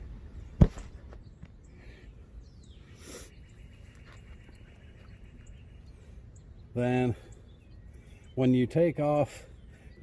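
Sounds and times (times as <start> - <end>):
faint bird chirps: 0.3 - 10.0.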